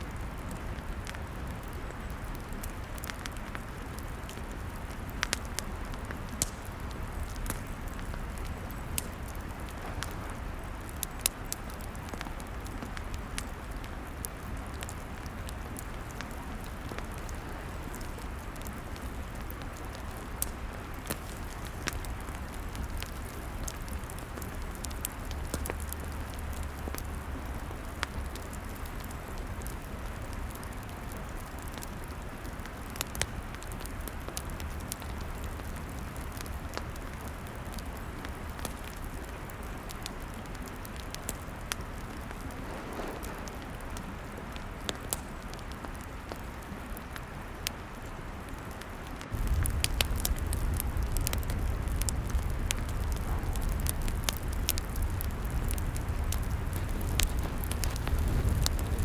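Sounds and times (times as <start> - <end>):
log fire crackling: 0.0 - 59.0
steady hiss: 41.4 - 45.7
low rumble: 49.4 - 59.0.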